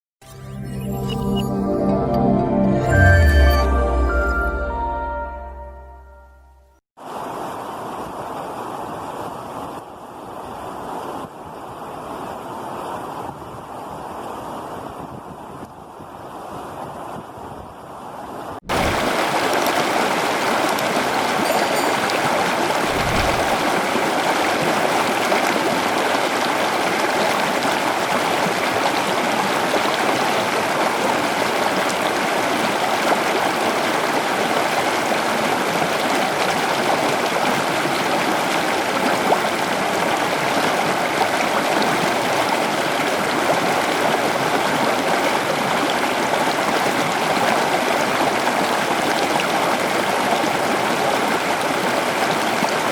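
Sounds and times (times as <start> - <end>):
floodwater rushing: 18.7 - 52.9.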